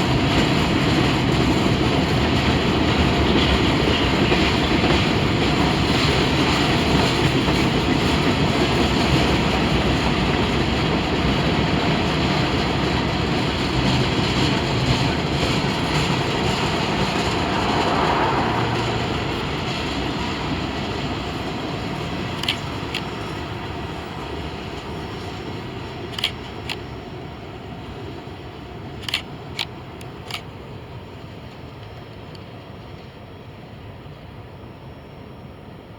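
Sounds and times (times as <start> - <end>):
freight train rumbling: 0.0 - 35.9
sharp clicks: 22.3 - 23.2, 26.0 - 26.9, 29.0 - 30.5.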